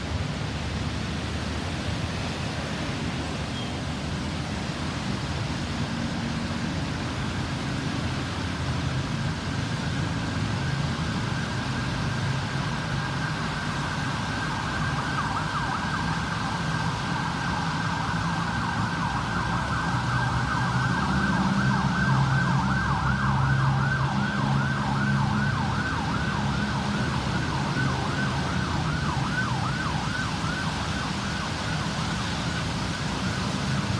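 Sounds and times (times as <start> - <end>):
road traffic rumble: 0.0 - 33.9
ambulance siren yelping: 11.0 - 33.9.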